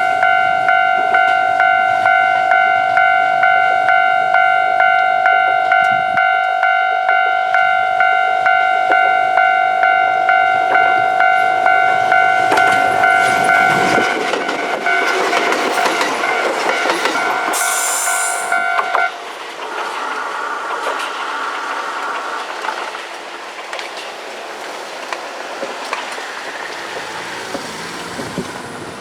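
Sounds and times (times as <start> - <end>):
level crossing bell dinging: 0.0 - 19.2
train wheels clicking over rail joints: 8.8 - 29.0.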